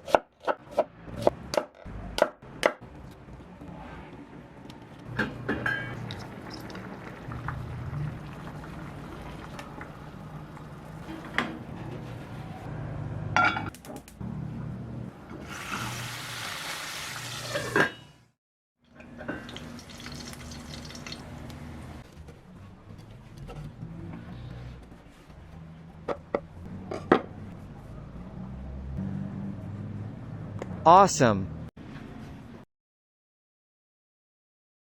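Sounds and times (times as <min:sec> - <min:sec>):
water running and splashing: 0:19.5 - 0:21.4.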